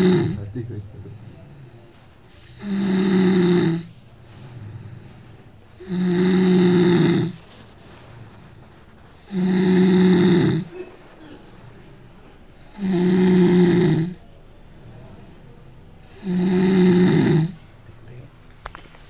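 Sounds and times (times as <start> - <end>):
person snoring loudly: 0.0 - 0.5, 2.3 - 3.9, 5.7 - 7.4, 9.2 - 10.7, 12.5 - 14.2, 16.0 - 17.6.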